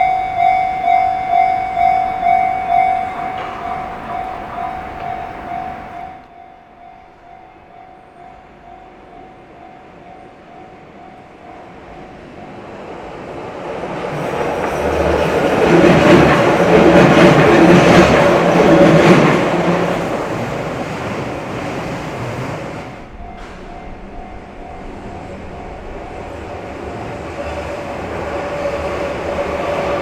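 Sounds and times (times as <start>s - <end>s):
train wheels clattering: 0.0s - 6.0s, 14.0s - 30.0s
crossing warning bell: 0.0s - 13.0s, 23.0s - 30.0s.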